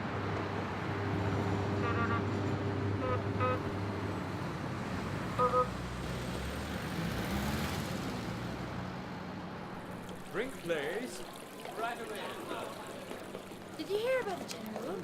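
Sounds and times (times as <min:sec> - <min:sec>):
traffic noise: 0:00.0 - 0:15.0
car horn double toot: 0:01.8 - 0:02.3, 0:03.0 - 0:03.7, 0:05.4 - 0:05.7.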